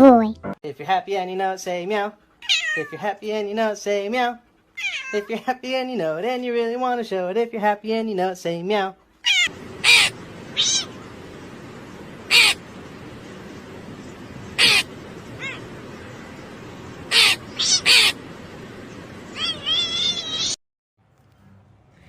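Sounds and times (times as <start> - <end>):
animal giving harsh calls: 9.2 - 11.1, 12.2 - 12.7, 14.5 - 15.8, 17.1 - 18.2, 19.3 - 20.6.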